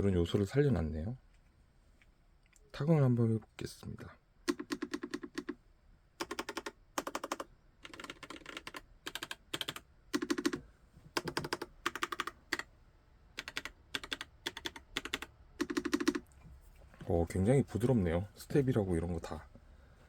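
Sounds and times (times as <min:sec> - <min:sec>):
mechanical keyboard typing: 0:04.5 - 0:05.6, 0:06.2 - 0:10.6, 0:11.2 - 0:12.7, 0:13.4 - 0:16.3.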